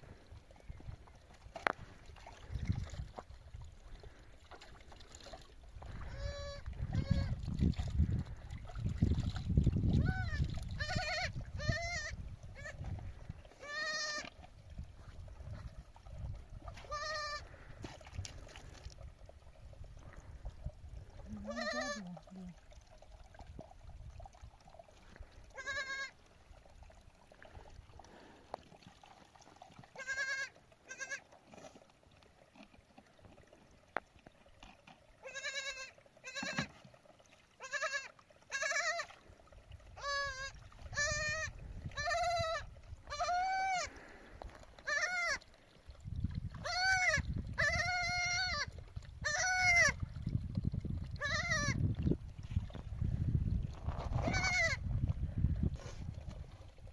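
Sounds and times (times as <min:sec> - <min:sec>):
sheep bleating: 0:21.4 - 0:22.0.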